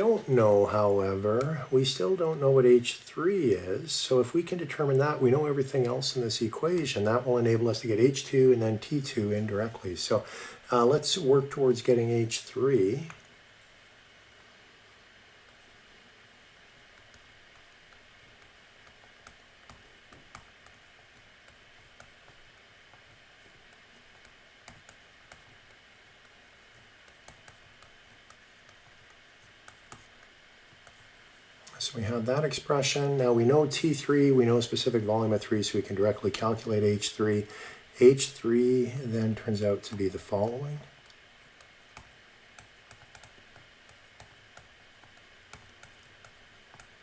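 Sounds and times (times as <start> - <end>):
steady background hiss: 0.0 - 47.0
computer keyboard typing: 16.9 - 31.1, 39.2 - 47.0.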